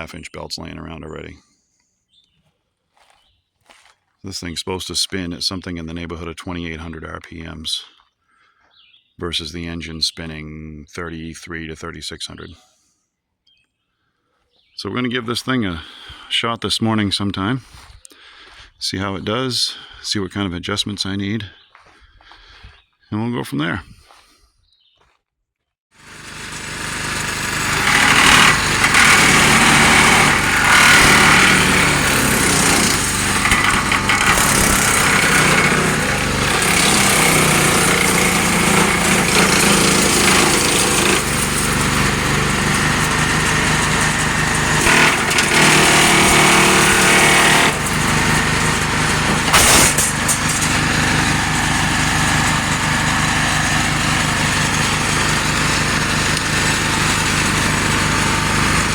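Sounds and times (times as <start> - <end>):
chipper-shredder running: 26.0 - 58.9
garden tractor engine running: 26.0 - 58.9.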